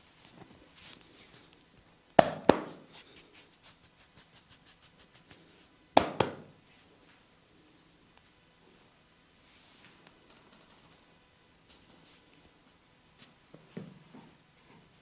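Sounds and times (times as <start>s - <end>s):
hands slapping skin: 2.2s - 2.8s, 6.0s - 6.5s.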